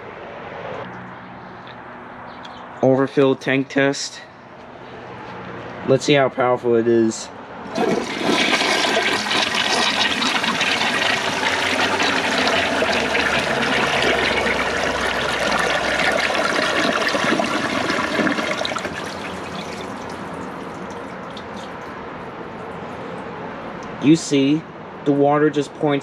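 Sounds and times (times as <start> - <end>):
toilet flushing: 7.7 - 21.8
water running steadily: 7.7 - 21.9.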